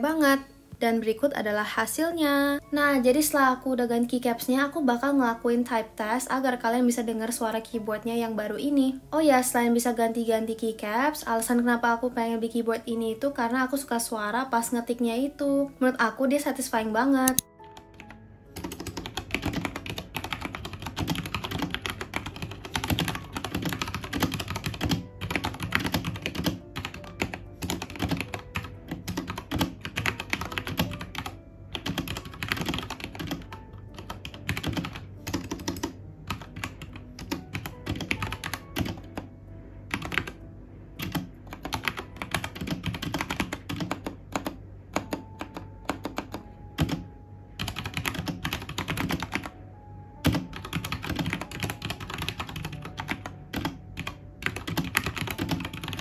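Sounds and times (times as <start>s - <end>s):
mechanical keyboard typing: 17.2s - 39.3s, 39.9s - 40.4s, 41.0s - 49.5s, 50.2s - 56.0s.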